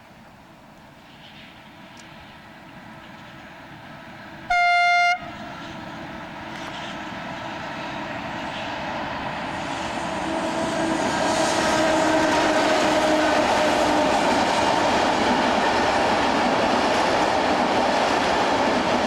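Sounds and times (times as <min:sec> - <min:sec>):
approaching train rumble: 0:00.0 - 0:19.0
train horn blast: 0:04.5 - 0:05.6, 0:10.2 - 0:14.2.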